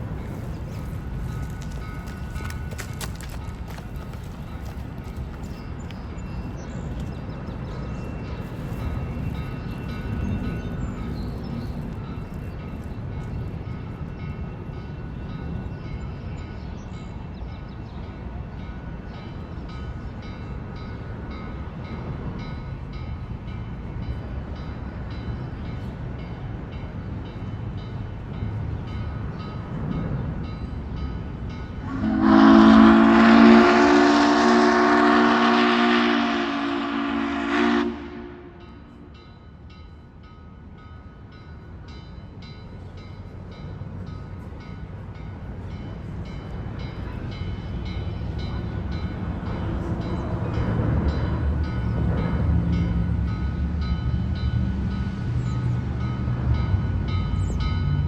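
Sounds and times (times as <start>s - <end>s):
steam locomotive rumbling: 0.0s - 58.0s
steam whistle chord: 31.9s - 38.7s.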